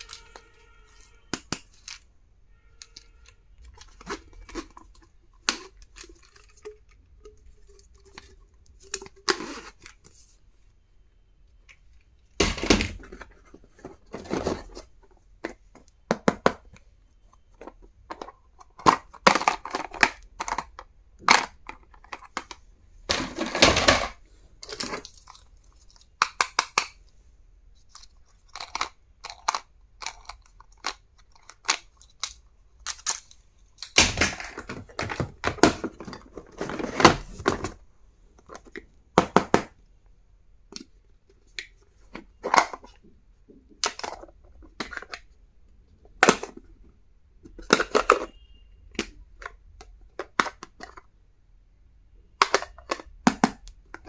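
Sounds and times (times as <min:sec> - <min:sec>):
packaging clicks taps and rustles: 0:00.0 - 0:02.1, 0:02.7 - 0:10.2, 0:11.7 - 0:27.1, 0:27.8 - 0:37.8, 0:52.4 - 0:54.0.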